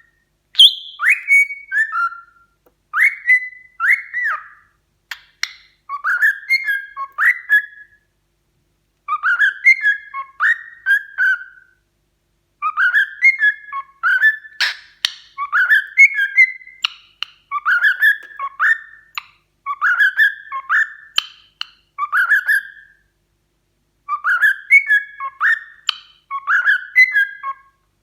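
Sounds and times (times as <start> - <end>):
cockatiel whistling a tune: 0.0 - 8.1, 9.1 - 11.8, 12.6 - 23.1, 24.1 - 27.8.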